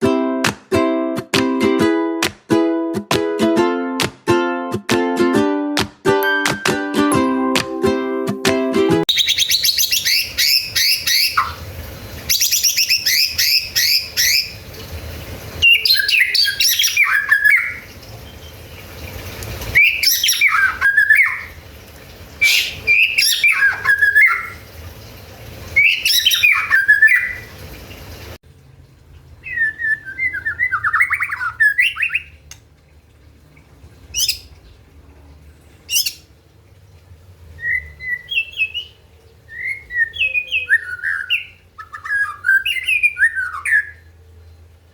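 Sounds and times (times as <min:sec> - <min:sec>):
bird singing trills and whistles: 0:09.1 - 0:11.6, 0:12.3 - 0:14.6, 0:15.6 - 0:18.5, 0:19.7 - 0:21.6, 0:22.4 - 0:24.6, 0:25.8 - 0:27.5, 0:29.4 - 0:32.4, 0:34.1 - 0:34.5, 0:35.9 - 0:36.2, 0:37.6 - 0:44.1.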